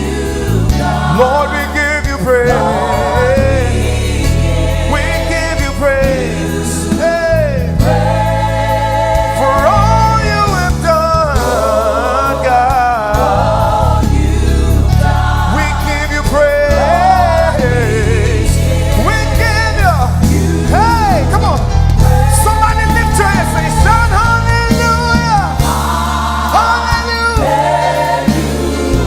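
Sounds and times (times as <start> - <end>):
band accompaniment with bass: 0.0 - 29.0
choir singing wordless melodies: 0.0 - 29.0.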